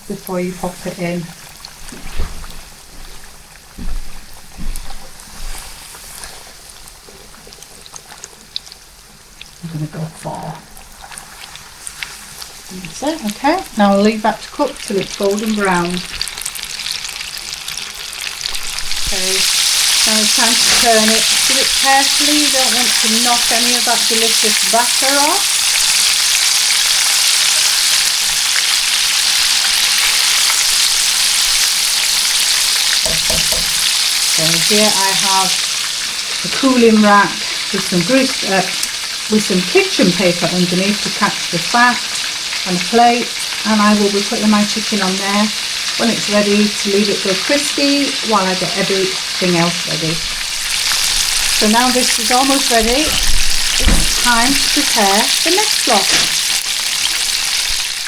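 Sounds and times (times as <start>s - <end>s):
chicken sizzling in hot oil: 0.0s - 58.0s
dull knocks: 52.2s - 54.9s.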